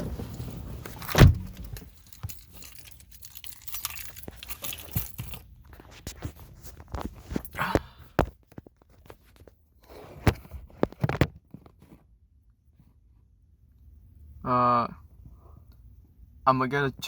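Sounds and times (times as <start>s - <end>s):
keys jangling: 0.3s - 5.8s
loud thump: 1.2s - 1.7s.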